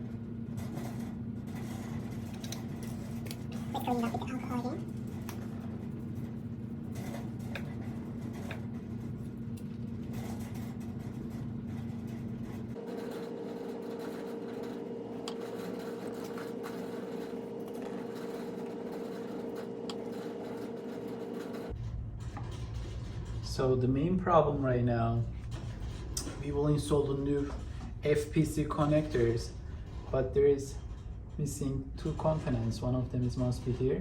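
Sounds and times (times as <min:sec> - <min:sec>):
machine hum: 0:00.0 - 0:34.0.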